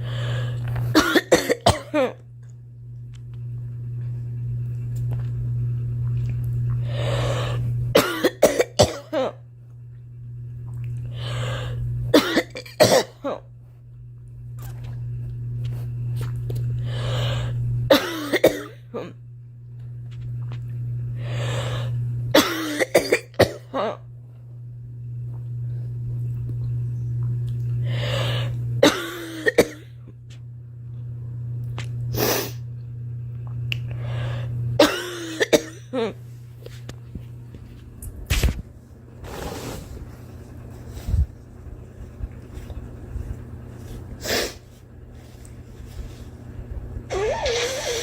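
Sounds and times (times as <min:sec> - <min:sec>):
steady low hum: 0:00.0 - 0:48.0
girl coughing: 0:01.0 - 0:02.2, 0:08.0 - 0:09.4, 0:12.1 - 0:13.4, 0:17.9 - 0:19.2, 0:22.4 - 0:24.0, 0:28.8 - 0:29.9, 0:34.8 - 0:36.2.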